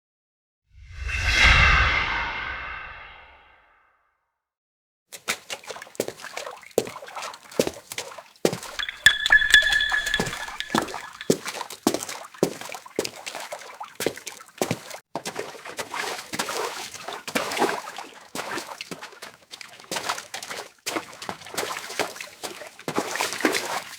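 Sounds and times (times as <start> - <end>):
footsteps splashing through water: 5.1 - 23.9
high ringing tone: 8.8 - 11.4.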